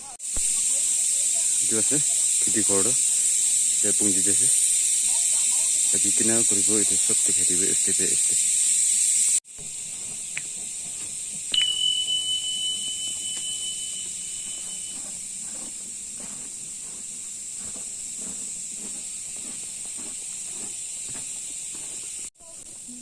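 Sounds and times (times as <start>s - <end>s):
steady high-pitched hiss: 0.0s - 23.0s
shrill steady tone: 11.5s - 18.4s.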